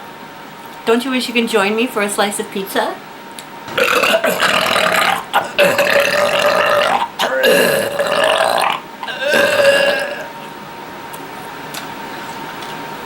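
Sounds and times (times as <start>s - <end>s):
woman burping: 3.7s - 10.3s.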